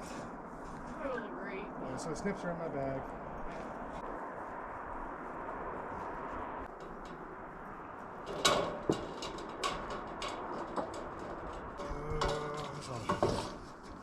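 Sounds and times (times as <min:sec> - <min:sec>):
sheet metal clicks and knocks: 0:06.7 - 0:14.0.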